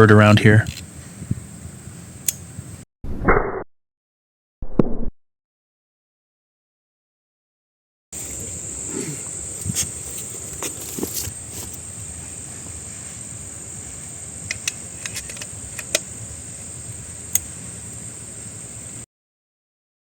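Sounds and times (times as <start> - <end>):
insects droning: 8.2 - 19.1.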